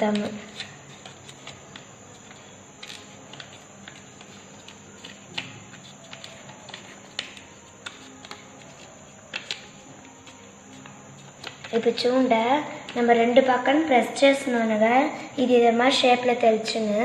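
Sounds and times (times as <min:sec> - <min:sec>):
paper crinkling and tapping: 0:00.0 - 0:12.1.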